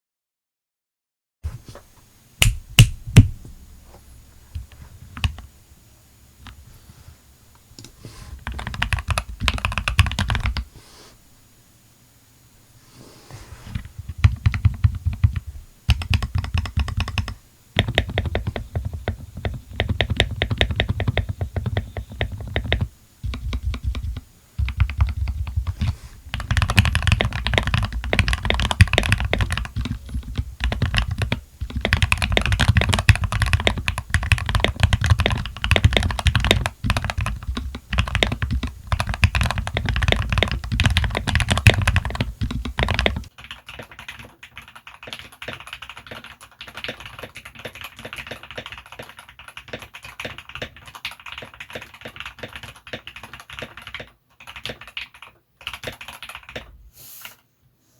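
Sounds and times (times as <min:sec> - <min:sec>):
fast mechanical keyboard typing: 0:08.4 - 0:10.7, 0:13.8 - 0:56.7.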